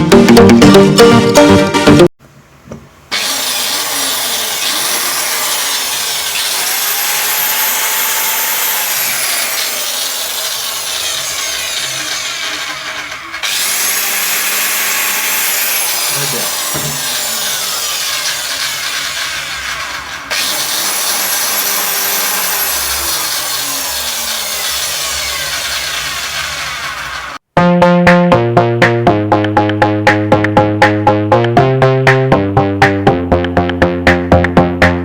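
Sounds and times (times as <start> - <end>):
music: 0.0 - 2.1, 27.6 - 35.0
electric tile cutter running: 3.1 - 27.4.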